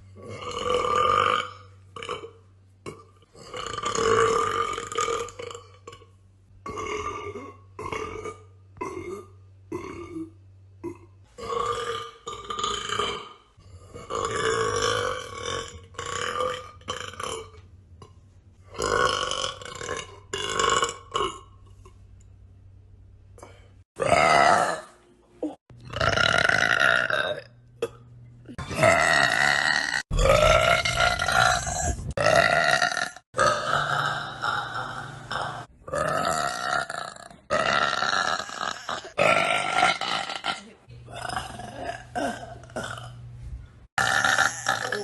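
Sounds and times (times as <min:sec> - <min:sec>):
woman burping: 0:24.0 - 0:43.2, 0:44.0 - 0:45.0.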